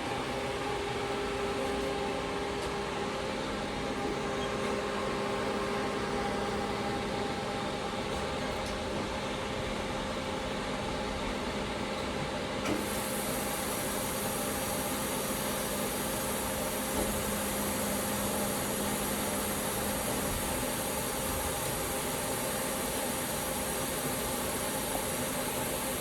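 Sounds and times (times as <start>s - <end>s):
lathe running with mechanical whir: 12.7s - 26.0s.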